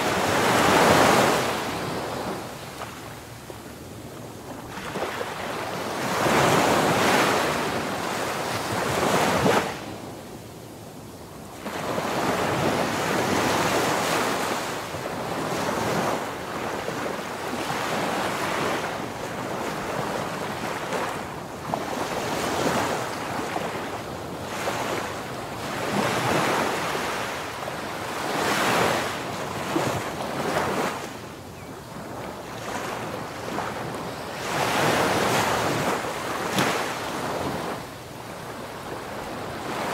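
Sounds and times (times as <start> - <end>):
waves breaking and washing in: 0.0 - 39.9.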